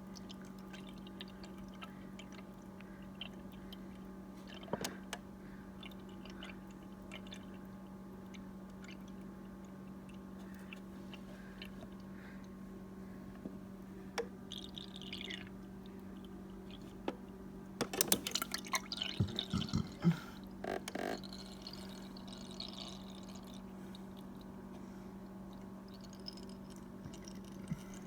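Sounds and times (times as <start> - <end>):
steady low hum: 0.0 - 28.0
water pouring into a cup: 0.1 - 3.5, 14.5 - 16.1, 18.2 - 20.0, 20.7 - 24.5, 25.5 - 28.0.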